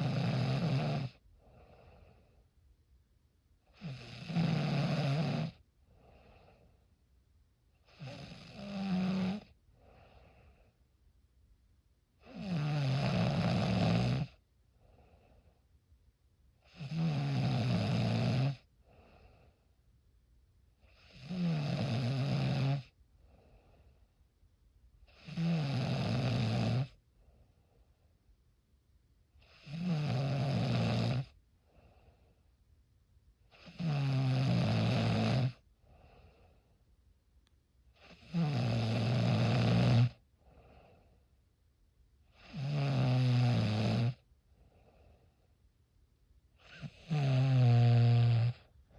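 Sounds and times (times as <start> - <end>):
person snoring: 0.0 - 2.2, 3.8 - 6.6, 7.9 - 10.5, 12.2 - 14.4, 16.7 - 19.3, 20.9 - 22.9, 25.1 - 27.0, 29.4 - 31.3, 33.5 - 36.2, 38.0 - 40.8, 42.4 - 44.2, 46.6 - 48.7
soft breathing: 1.2 - 2.6, 5.8 - 7.0, 9.4 - 10.9, 14.7 - 15.8, 18.6 - 19.9, 23.1 - 24.2, 31.6 - 32.6, 35.6 - 37.0, 40.2 - 41.4, 44.4 - 45.7.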